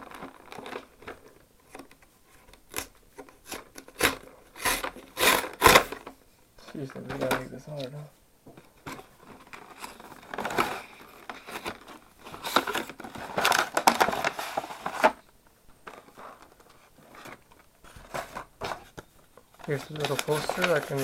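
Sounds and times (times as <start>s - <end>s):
packaging tearing and crinkling: 0.0s - 1.1s, 2.6s - 6.1s, 9.0s - 15.2s, 19.6s - 21.0s.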